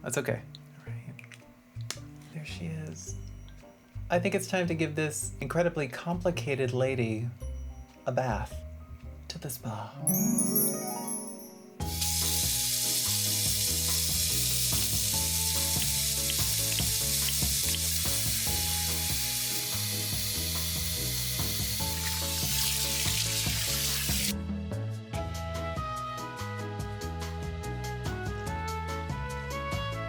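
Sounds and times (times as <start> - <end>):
water running from a tap: 11.8 - 24.4.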